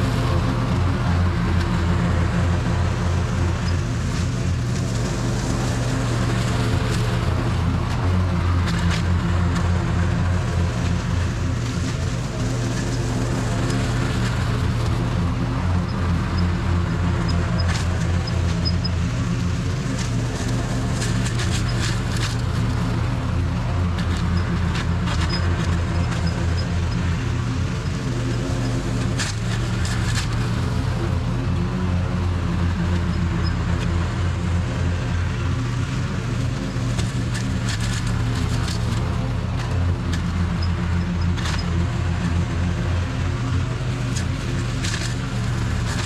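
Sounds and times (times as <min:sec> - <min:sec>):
mower engine running: 0:00.0 - 0:46.0.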